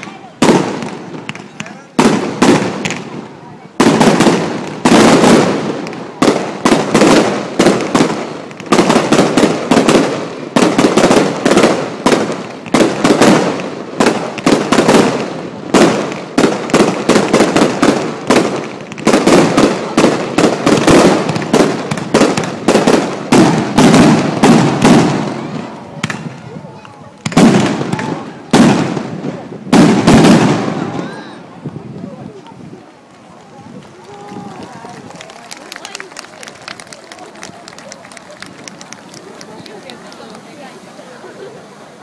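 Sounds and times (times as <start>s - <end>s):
fireworks bangs with echo: 0.0s - 31.9s, 33.6s - 40.6s.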